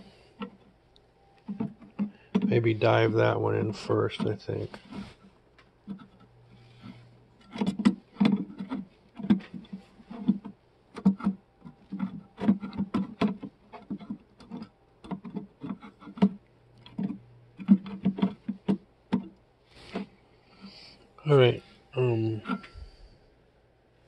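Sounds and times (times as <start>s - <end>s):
hard plastic clicks and knocks: 1.5s - 2.5s, 7.4s - 20.1s.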